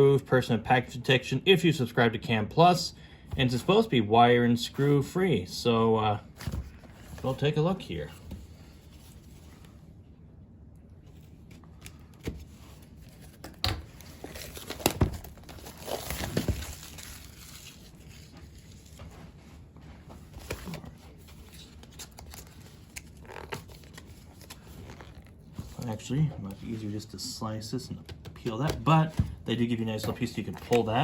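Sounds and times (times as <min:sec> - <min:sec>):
plastic crinkling and tearing: 0:12.9 - 0:19.0.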